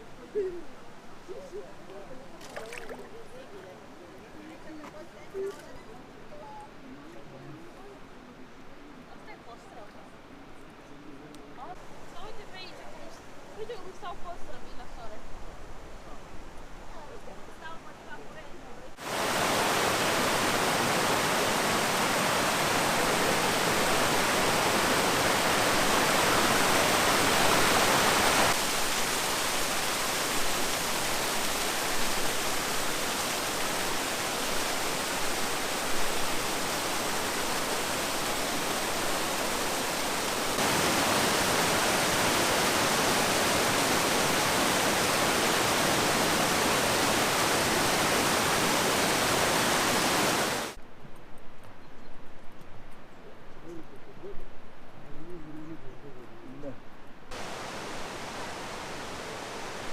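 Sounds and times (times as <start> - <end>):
waterfall rushing: 19.0 - 50.8, 57.3 - 59.9.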